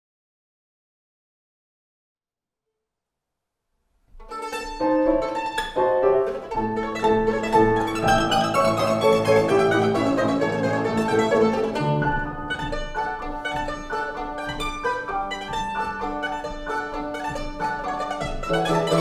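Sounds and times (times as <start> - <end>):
piano accompaniment: 4.2 - 19.0
violins playing: 4.2 - 19.0.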